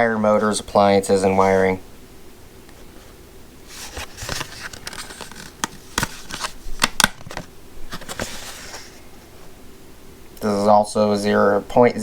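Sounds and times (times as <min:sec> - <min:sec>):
packaging rustling and scraping: 0:02.8 - 0:09.3.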